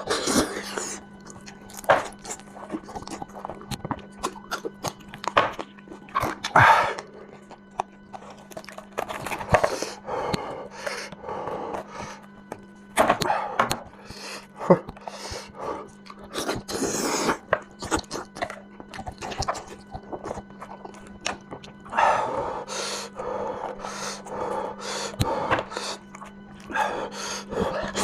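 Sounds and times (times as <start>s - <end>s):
person chewing meat: 0.0s - 28.0s.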